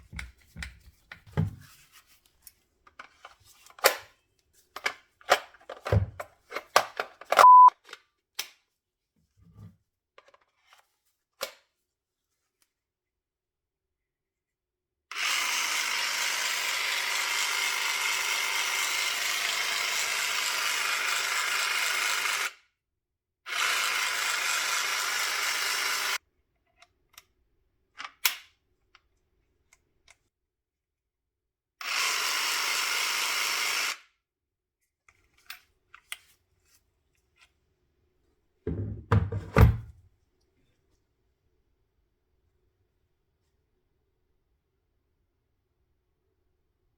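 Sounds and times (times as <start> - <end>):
cordless jigsaw running: 15.1 - 22.5, 23.5 - 26.2.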